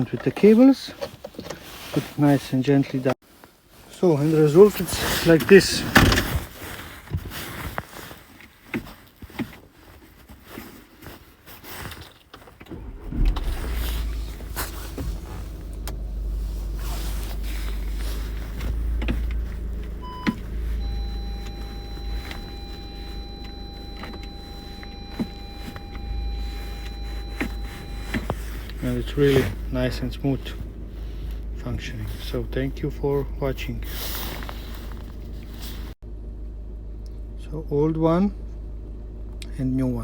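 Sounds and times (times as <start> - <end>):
car engine starting and idling: 12.6 - 40.0
high warning tone: 17.7 - 30.6
short electronic beep: 20.0 - 28.3.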